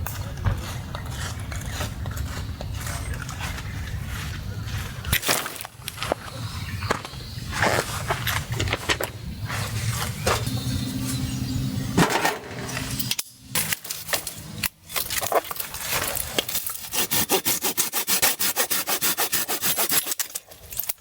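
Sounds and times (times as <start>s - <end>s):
handling and rustling: 13.6s - 16.9s
hand saw cutting firewood: 14.9s - 20.9s.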